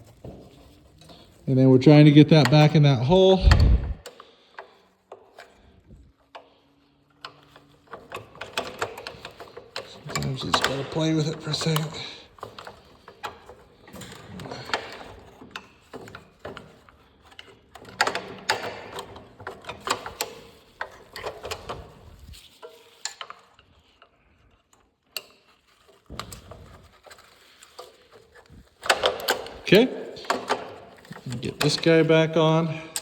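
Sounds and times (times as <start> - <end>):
metal parts clicking and rattling: 6.2 - 33.0.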